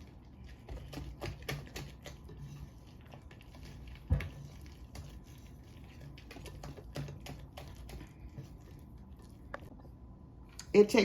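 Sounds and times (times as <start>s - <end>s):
whisk clicking against bowl: 0.7s - 2.6s, 6.0s - 8.1s.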